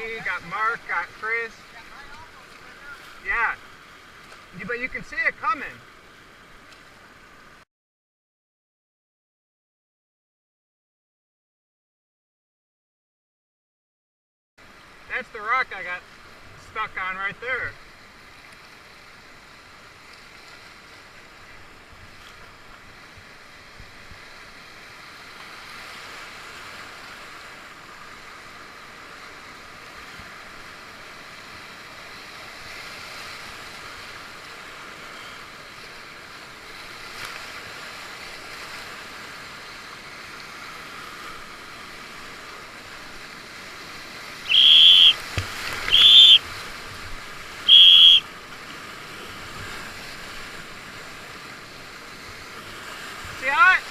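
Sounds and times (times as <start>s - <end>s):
whitewater rushing: 0.0s - 3.6s, 41.3s - 48.2s, 49.3s - 53.9s
safety whistle blasts: 44.5s - 45.2s, 45.9s - 46.4s, 47.7s - 48.2s.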